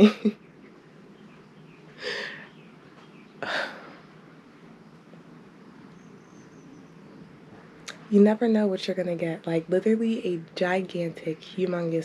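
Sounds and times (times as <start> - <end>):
woman exhaling breathily: 2.0 - 2.5, 3.4 - 4.0.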